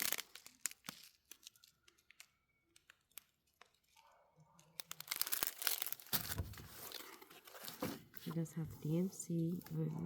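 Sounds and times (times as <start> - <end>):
crinkling plastic: 0.0 - 10.0
plastic bags rustling and clicking: 4.6 - 9.7.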